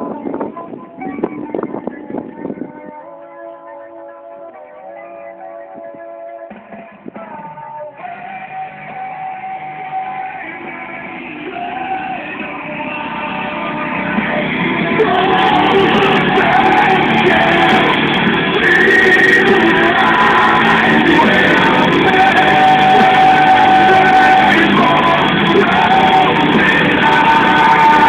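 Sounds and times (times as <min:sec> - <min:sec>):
rock music with shouted singing: 0:04.4 - 0:28.0.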